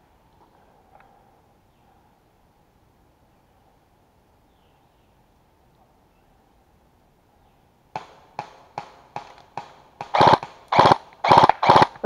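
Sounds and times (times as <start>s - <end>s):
sharp knocks: 8.0s - 11.0s.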